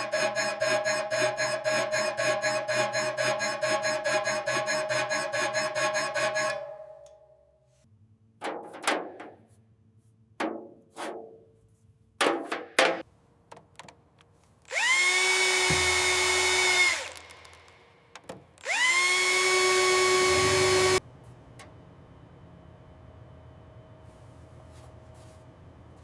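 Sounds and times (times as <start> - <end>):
power drill whining: 14.7 - 17.7, 18.6 - 21.0.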